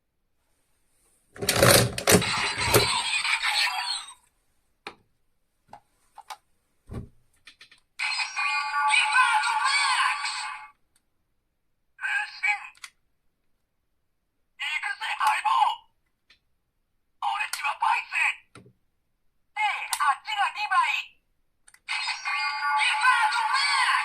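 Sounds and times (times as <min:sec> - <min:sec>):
tinny toy voice from small speaker: 0:01.6 - 0:04.2, 0:08.0 - 0:10.8, 0:12.0 - 0:13.0, 0:14.6 - 0:16.0, 0:17.2 - 0:18.6, 0:19.5 - 0:21.2, 0:21.8 - 0:24.0.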